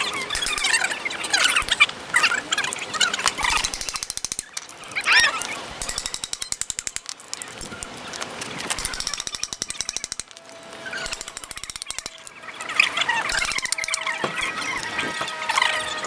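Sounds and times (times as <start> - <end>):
high squealing chirps: 0.0 - 6.5, 8.8 - 16.0
rapid mechanical clicking: 3.2 - 12.4, 13.2 - 14.5.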